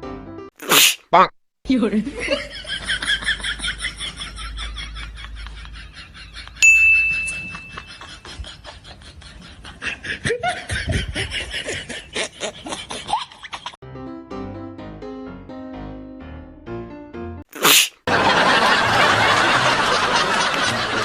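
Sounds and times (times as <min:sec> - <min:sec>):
person laughing: 0:02.2 - 0:13.8
bright ding: 0:06.6 - 0:08.1.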